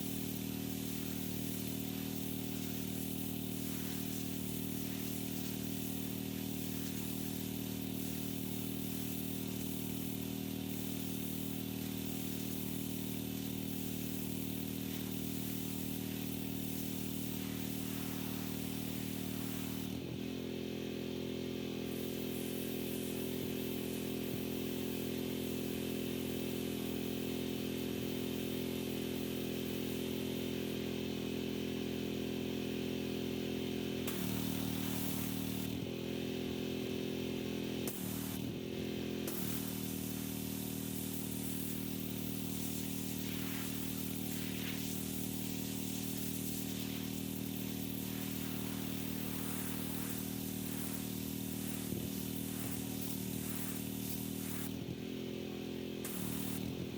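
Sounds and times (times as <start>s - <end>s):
pressure washer engine running: 0.0s - 56.9s
water spray hissing: 10.8s - 20.0s, 34.1s - 35.7s, 37.9s - 38.4s, 39.2s - 54.8s, 56.0s - 56.8s.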